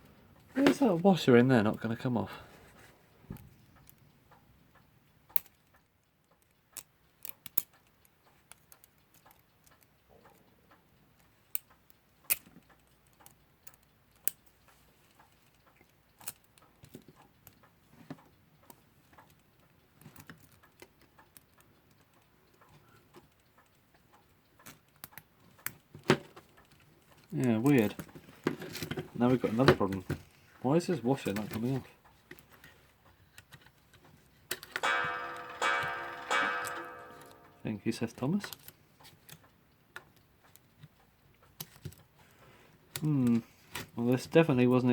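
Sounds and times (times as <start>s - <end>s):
small tools clicking on metal parts: 5.3s - 30.1s.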